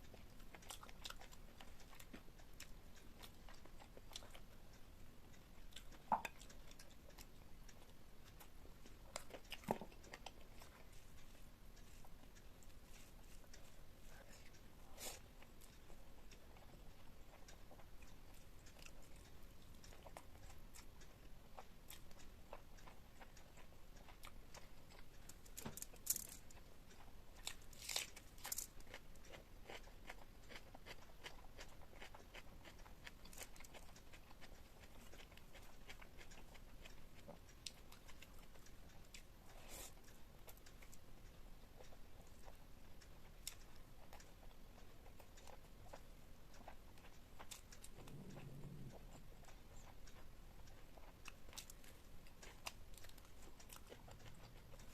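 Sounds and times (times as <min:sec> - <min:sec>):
person chewing food: 0:00.0 - 0:54.9
food crunching: 0:05.3 - 0:54.9.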